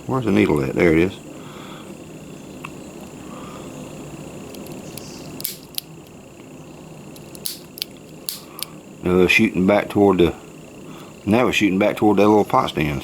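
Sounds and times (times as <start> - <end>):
faint steady hiss: 0.0 - 13.0
camp stove parts clicking: 4.5 - 6.2, 7.1 - 8.8.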